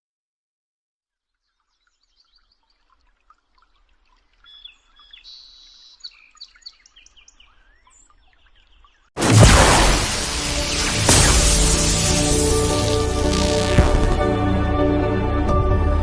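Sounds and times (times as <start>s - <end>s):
garden birds chirping: 1.2s - 9.2s.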